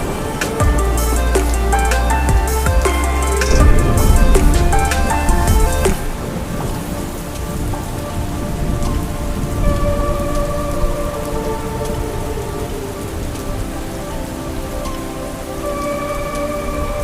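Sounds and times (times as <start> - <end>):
low rumble: 0.0 - 6.5
heavy rain falling: 0.0 - 17.0
soft sustained music tones: 0.0 - 17.0.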